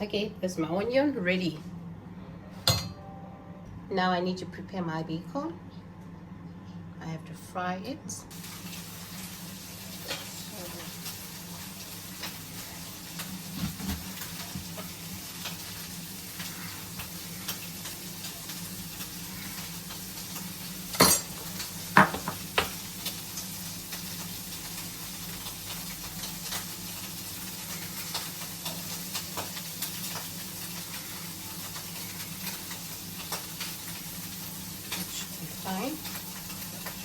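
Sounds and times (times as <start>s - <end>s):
bacon sizzling in a pan: 8.3s - 37.0s.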